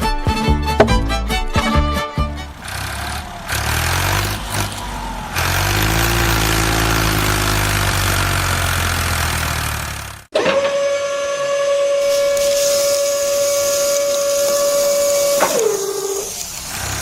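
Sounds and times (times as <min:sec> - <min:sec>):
vehicle engine running: 0:00.6 - 0:10.3, 0:13.5 - 0:17.0.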